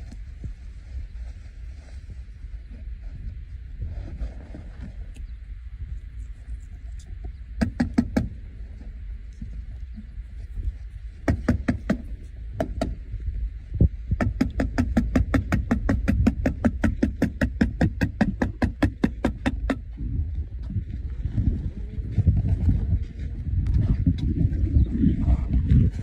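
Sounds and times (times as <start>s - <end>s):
low rumble: 8.3s - 26.0s
sharp knocks on roof: 11.2s - 13.0s, 14.2s - 19.8s.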